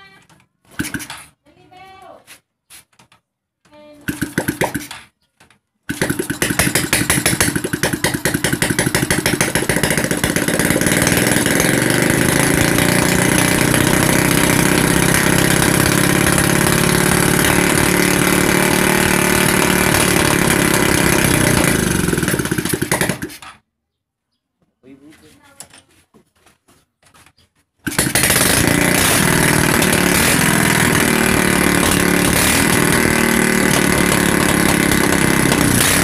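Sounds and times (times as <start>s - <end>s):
motorcycle engine running: 4.1s - 4.9s, 5.9s - 23.4s, 27.8s - 36.0s.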